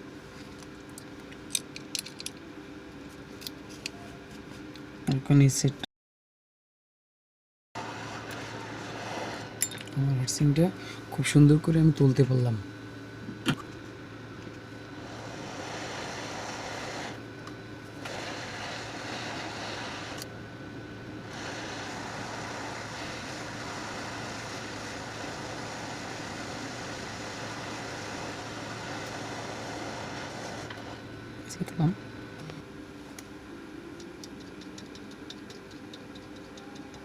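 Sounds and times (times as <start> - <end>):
hot-air station blowing hiss: 7.8 - 9.6, 15.0 - 17.2, 18.0 - 20.3, 21.2 - 31.1.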